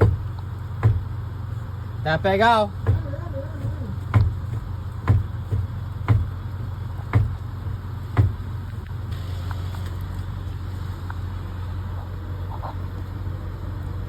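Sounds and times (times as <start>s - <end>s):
sharp knocks: 0.0s - 1.2s, 2.8s - 6.4s, 7.0s - 8.6s
diesel truck engine idling: 0.0s - 14.0s.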